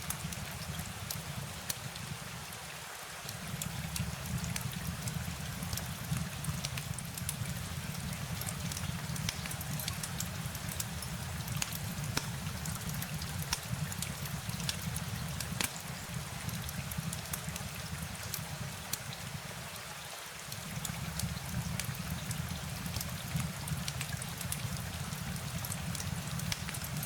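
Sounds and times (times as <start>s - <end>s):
steady rain: 0.0s - 27.0s
drops ticking on surface: 3.3s - 19.1s, 20.5s - 27.0s.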